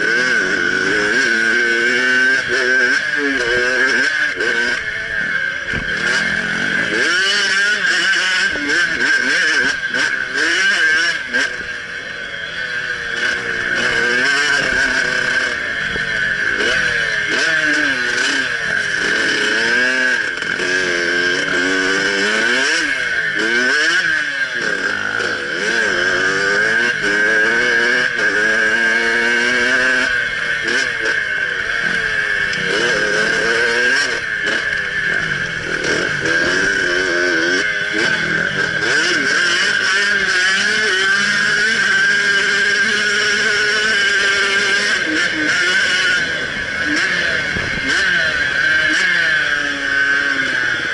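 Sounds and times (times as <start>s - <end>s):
dirt bike engine revving: 0.0s - 50.9s.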